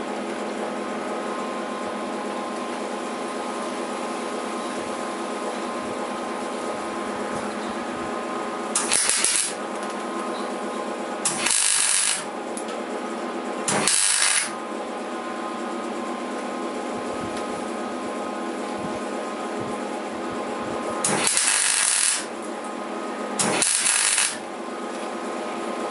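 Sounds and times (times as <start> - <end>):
steady machine hum: 0.0 - 25.9
arc welder crackling: 8.2 - 10.3, 11.2 - 12.8, 13.6 - 14.6, 20.7 - 22.5, 23.4 - 24.5.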